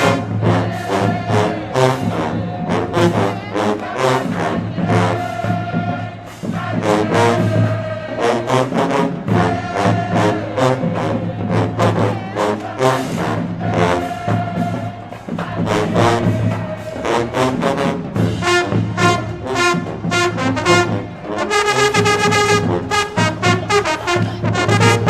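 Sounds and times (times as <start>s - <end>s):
drum and cymbal hits: 0.0s - 21.3s
brass band playing: 0.0s - 25.0s.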